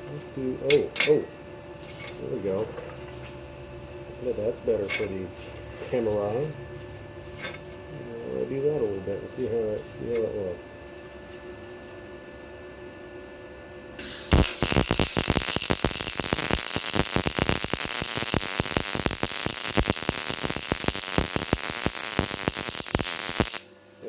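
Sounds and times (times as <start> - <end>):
welding arc crackling: 14.0 - 23.7.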